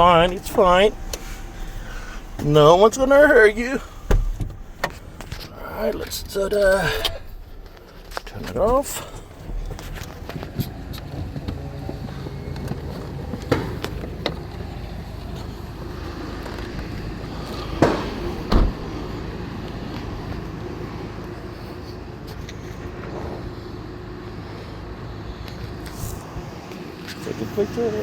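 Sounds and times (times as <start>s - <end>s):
loud metallic thumps: 0.0s - 10.5s
vehicle engine humming: 0.0s - 28.0s.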